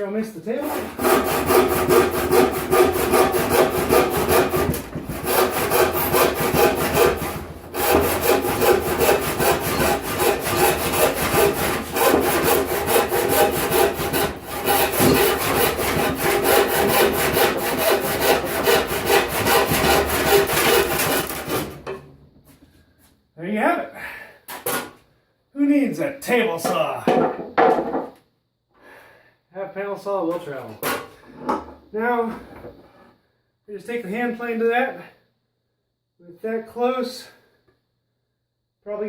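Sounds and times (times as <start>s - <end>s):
panel saw ripping wood: 0.6s - 22.0s.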